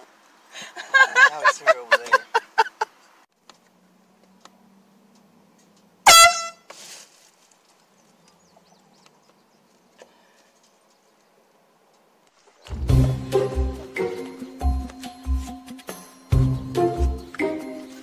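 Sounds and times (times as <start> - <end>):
air horn blast: 6.0 - 6.7.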